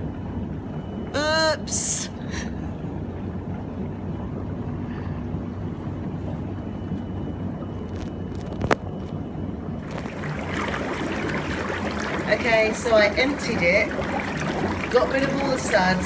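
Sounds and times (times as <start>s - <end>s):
bath pump hum: 9.8s - 16.0s
churning water: 9.8s - 16.0s.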